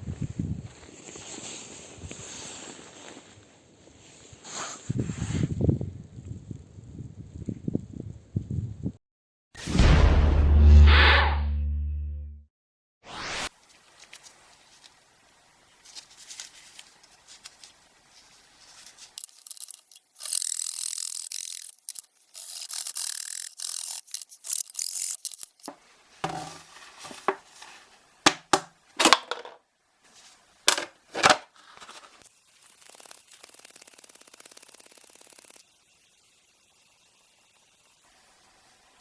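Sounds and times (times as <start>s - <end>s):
sharp scrapes on wood: 19.2s - 27.5s.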